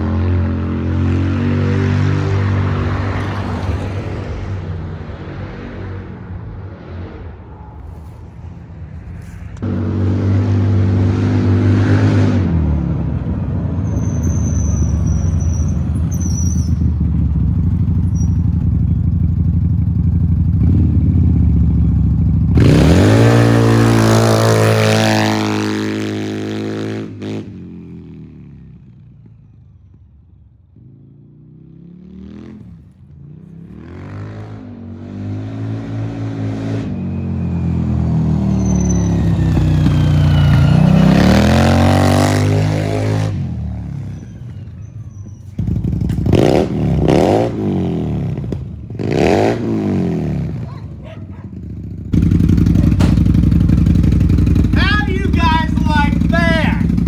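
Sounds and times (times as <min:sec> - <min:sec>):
off-road vehicle engine revving: 0:00.0 - 0:04.4, 0:09.6 - 0:18.9, 0:20.5 - 0:27.6, 0:33.5 - 0:57.0.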